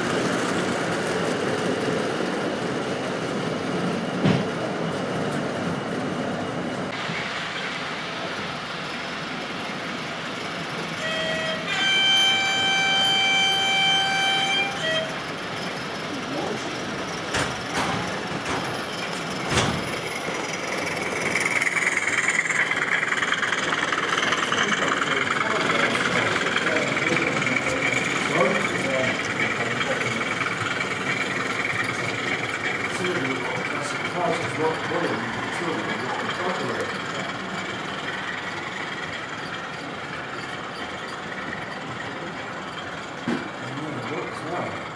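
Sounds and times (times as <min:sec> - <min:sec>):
model locomotive buzzing: 0:10.3 - 0:19.4, 0:20.0 - 0:44.9.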